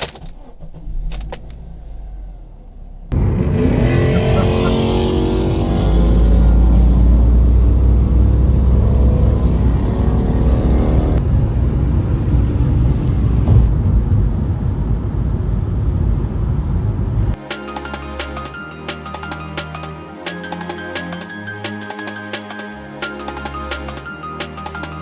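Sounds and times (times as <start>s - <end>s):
car engine passing by: 2.5s - 11.3s.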